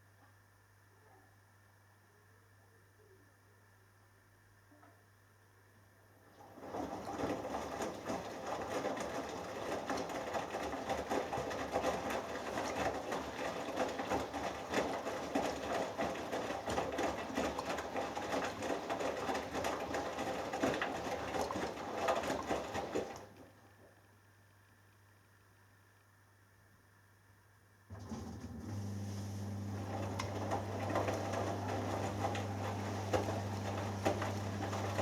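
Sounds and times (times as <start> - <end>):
water sloshing and splashing: 6.5 - 23.6, 28.9 - 35.0
washing machine drum turning: 28.0 - 35.0.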